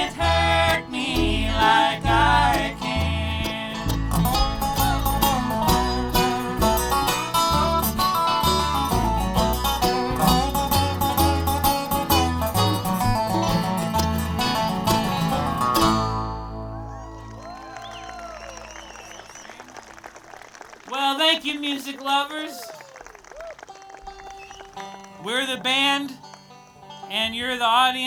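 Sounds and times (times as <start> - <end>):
bluegrass band playing: 0.0 - 28.0
fast picked banjo: 0.0 - 28.0.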